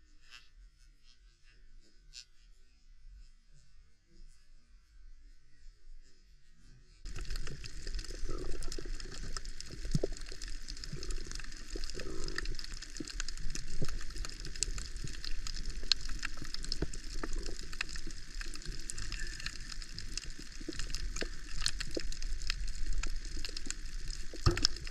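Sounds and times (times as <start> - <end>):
underwater hiss and low rumble: 0.0 - 24.9
dense crackle of sharp clicks: 7.0 - 24.9.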